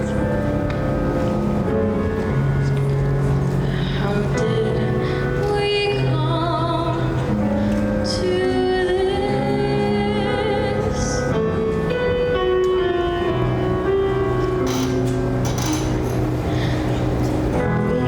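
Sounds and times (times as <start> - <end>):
sustained low accompaniment: 0.0 - 18.0.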